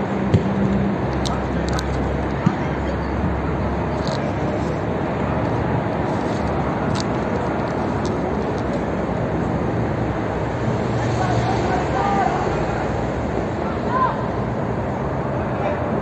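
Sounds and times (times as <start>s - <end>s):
rushing background noise: 0.0s - 16.0s.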